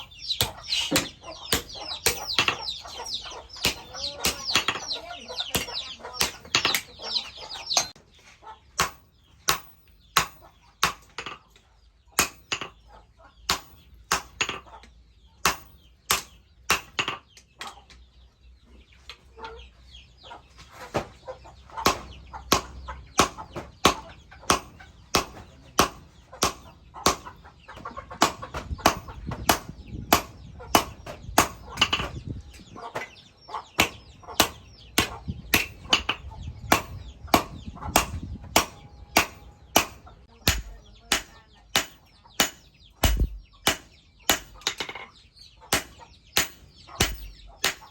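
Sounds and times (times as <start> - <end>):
chickens clucking: 0.0 - 8.8, 12.7 - 13.5, 14.6 - 15.4, 17.4 - 47.9
hammer striking steel on anvil: 0.2 - 7.0, 8.8 - 11.4, 12.2 - 12.8, 13.5 - 14.7, 15.4 - 17.2, 28.2 - 32.2, 33.8 - 45.0, 45.7 - 47.9.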